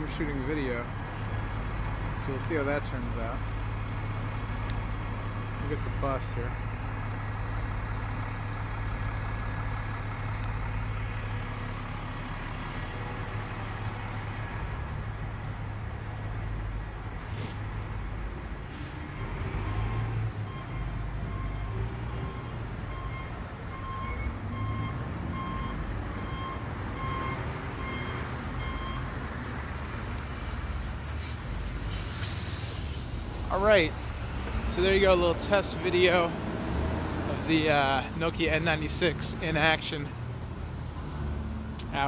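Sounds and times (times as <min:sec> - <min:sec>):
bus engine droning: 0:00.0 - 0:42.0
street noise: 0:00.0 - 0:42.0
reversing alarm beeping: 0:19.8 - 0:29.1.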